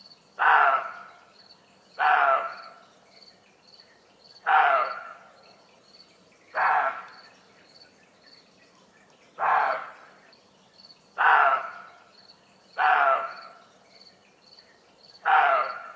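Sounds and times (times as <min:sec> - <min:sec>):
deer alarm barks: 0:00.4 - 0:01.1, 0:02.0 - 0:02.6, 0:04.5 - 0:05.2, 0:06.6 - 0:07.1, 0:09.4 - 0:10.0, 0:11.2 - 0:11.9, 0:12.8 - 0:13.4, 0:15.2 - 0:15.9.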